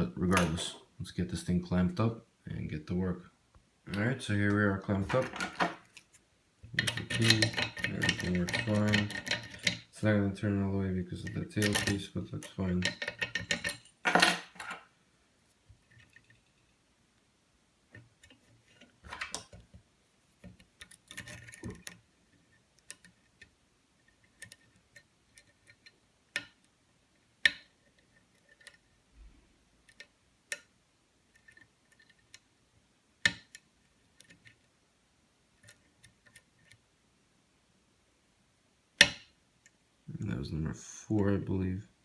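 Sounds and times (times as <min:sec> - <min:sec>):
lock pick scratching and tapping: 0:05.0 - 0:09.9, 0:11.2 - 0:14.8, 0:20.4 - 0:22.0, 0:22.8 - 0:26.8, 0:27.4 - 0:28.9, 0:29.9 - 0:30.7, 0:31.3 - 0:32.5, 0:33.2 - 0:34.6.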